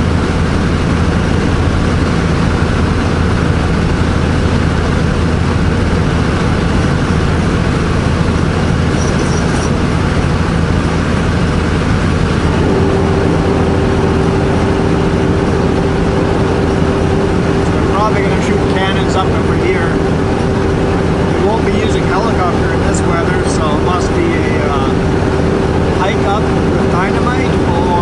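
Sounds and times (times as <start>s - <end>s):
diesel truck engine running: 0.0s - 28.0s
road noise: 0.0s - 28.0s
steady tone: 0.0s - 28.0s.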